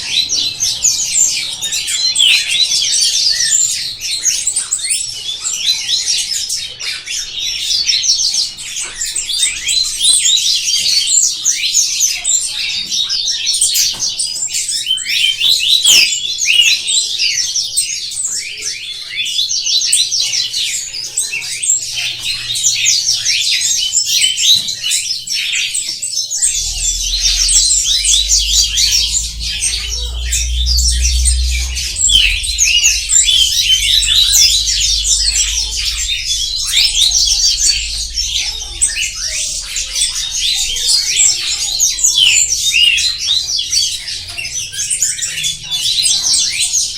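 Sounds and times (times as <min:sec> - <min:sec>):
small birds chirping: 0:17.9 - 0:46.9
low rumble: 0:26.4 - 0:42.5.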